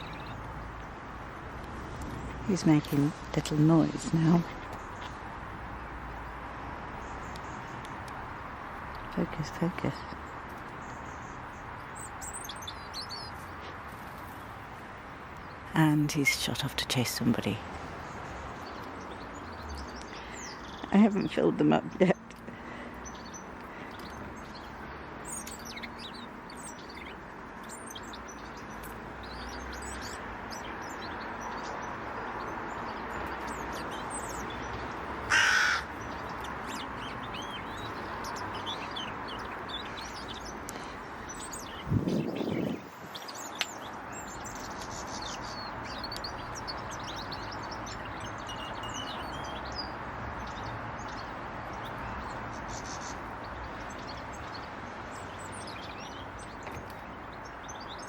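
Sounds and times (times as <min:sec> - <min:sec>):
small birds chirping: 0:00.0 - 0:58.0
harsh bird call: 0:35.3 - 0:36.0.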